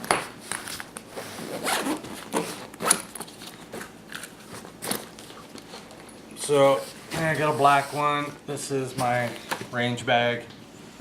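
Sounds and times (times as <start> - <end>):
zipper on fabric bag: 1.1 - 3.0.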